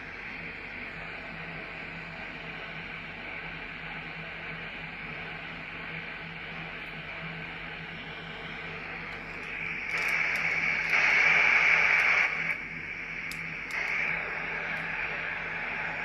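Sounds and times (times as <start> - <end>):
low steady hum: 0.0 - 16.0
radio static hiss: 0.0 - 16.0.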